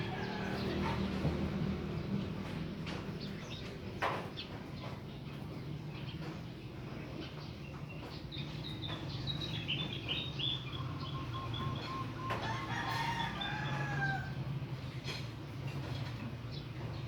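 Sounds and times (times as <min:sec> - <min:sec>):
rooster crowing: 0:00.0 - 0:00.8, 0:11.8 - 0:14.4
small birds chirping: 0:02.0 - 0:12.6.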